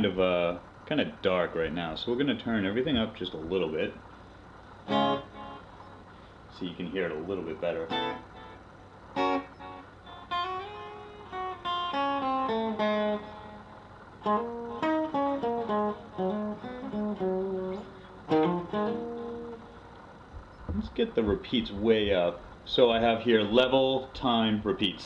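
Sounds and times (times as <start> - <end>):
clean electric guitar with delay: 4.8 - 6.1, 7.1 - 24.1
strummed guitar chord: 4.8 - 25.0.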